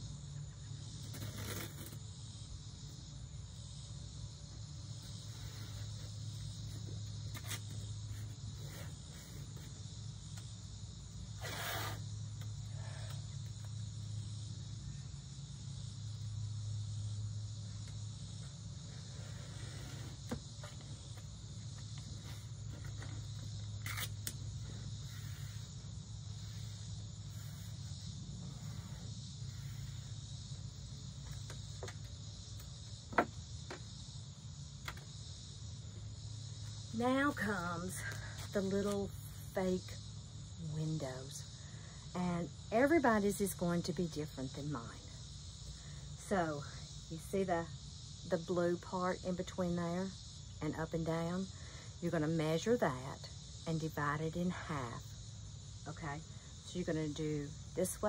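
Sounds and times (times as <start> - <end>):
high-pitched insect chorus: 0.0 - 58.0
low steady hum: 0.0 - 58.0.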